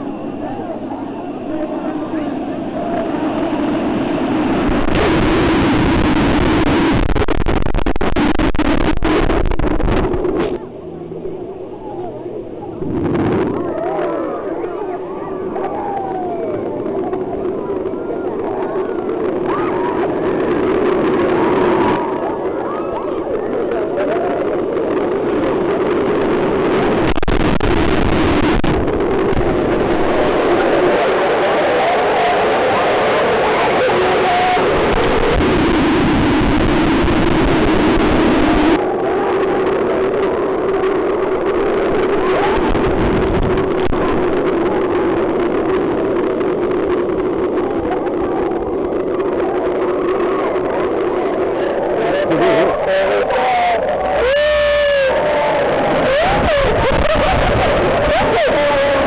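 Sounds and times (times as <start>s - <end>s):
crowd voices and shouts: 0.0s - 59.0s
wave breaking roar: 0.0s - 59.0s.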